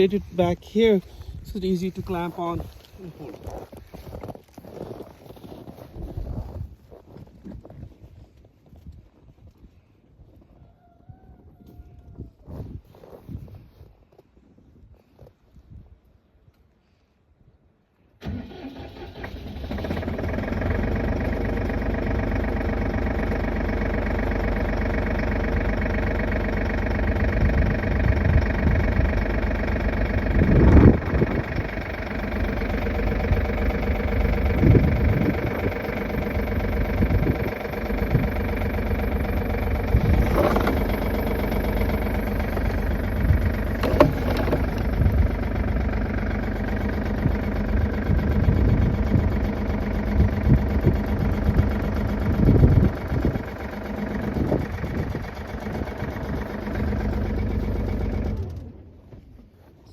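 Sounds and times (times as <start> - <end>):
tractor engine idling: 0.0 - 4.1, 18.2 - 59.4
sharp metallic clunks: 43.7 - 45.0.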